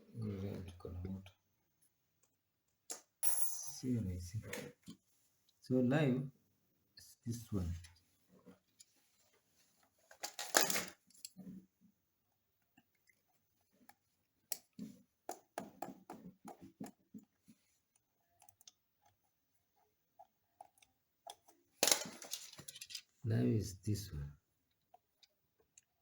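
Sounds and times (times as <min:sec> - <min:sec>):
small clicks and taps on wiring: 0:13.8 - 0:19.2.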